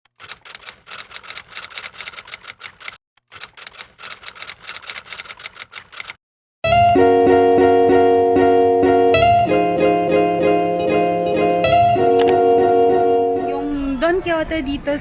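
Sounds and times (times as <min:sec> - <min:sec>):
rapid typewriter keystrokes: 0:00.1 - 0:06.2.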